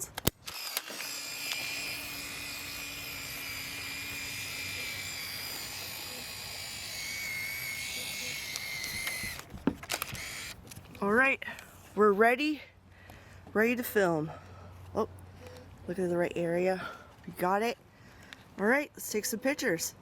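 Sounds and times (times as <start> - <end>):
camera film winder motor whining: 0.3 - 10.8.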